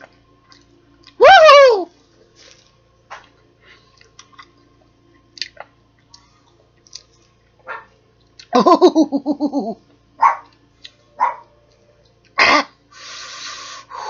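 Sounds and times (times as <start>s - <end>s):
woman's pitched vocal outburst: 1.2s - 1.9s
woman coughing: 12.4s - 12.8s
breathy exhale: 12.9s - 14.0s.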